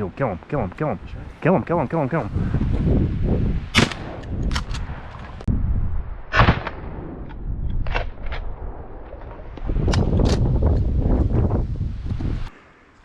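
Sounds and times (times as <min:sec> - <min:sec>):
wind buffeting microphone: 0:00.0 - 0:12.6
shotgun shots: 0:03.7 - 0:04.7, 0:06.3 - 0:07.3.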